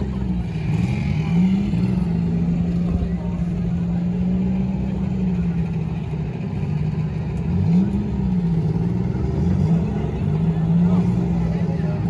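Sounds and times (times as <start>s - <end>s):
car engine revving: 0.0s - 12.0s
car engines running loud: 0.0s - 12.0s.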